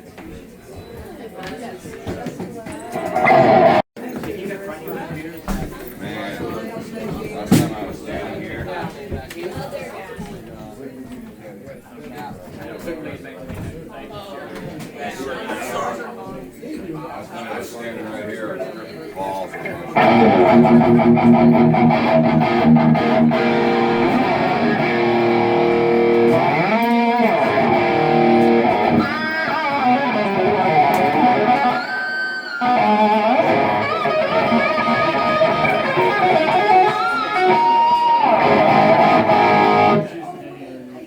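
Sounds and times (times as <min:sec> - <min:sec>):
electric guitar solo: 0:03.0 - 0:03.8, 0:20.0 - 0:40.1.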